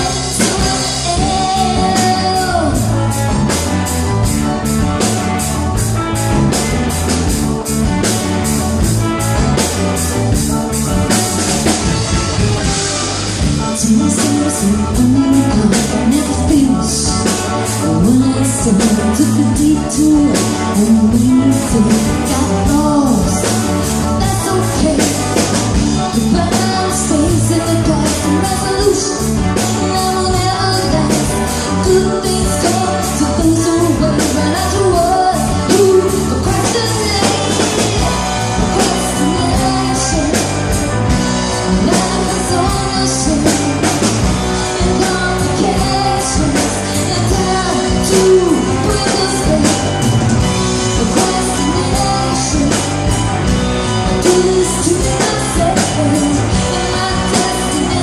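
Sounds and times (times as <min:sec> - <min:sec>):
rock music with lead vocal: 0:00.0 - 0:58.0
steady drum beat: 0:00.0 - 0:58.0.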